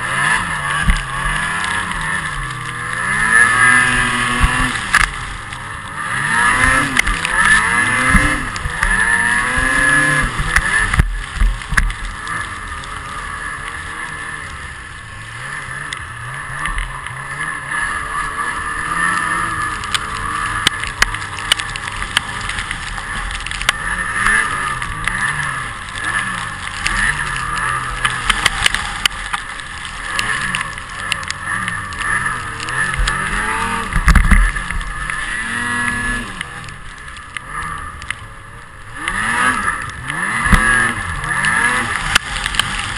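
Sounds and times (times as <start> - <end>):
snowmobile engine revving: 0.0 - 42.9.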